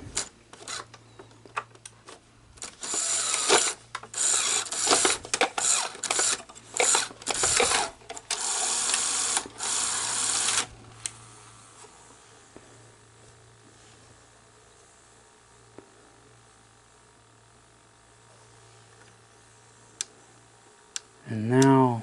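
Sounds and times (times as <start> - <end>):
mechanism clicks: 0.0 - 11.2
motor and gears whirring: 2.6 - 11.9.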